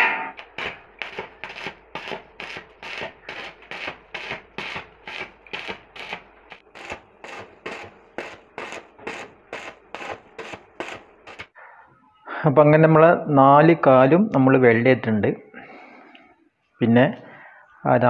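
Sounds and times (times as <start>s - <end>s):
hand tool rasping on metal: 6.8s - 11.4s.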